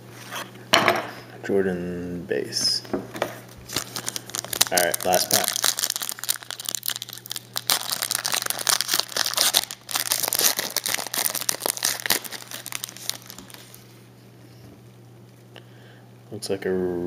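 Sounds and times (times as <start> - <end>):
plastic wrapper tearing and crinkling: 3.6 - 13.8.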